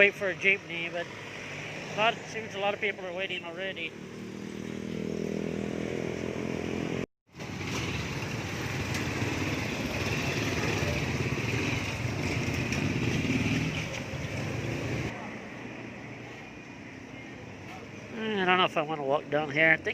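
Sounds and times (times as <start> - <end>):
street traffic: 0.0 - 19.9
motorcycle engine running: 3.9 - 15.1.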